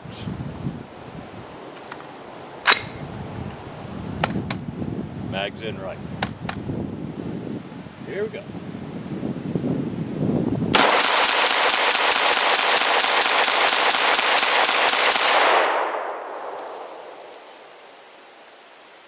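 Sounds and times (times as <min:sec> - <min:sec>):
rapid rifle shots: 0:02.7 - 0:03.0, 0:10.8 - 0:15.8.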